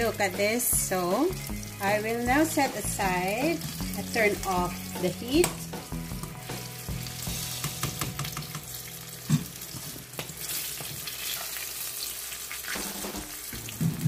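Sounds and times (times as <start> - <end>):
chicken wings sizzling in oil: 0.0 - 14.0.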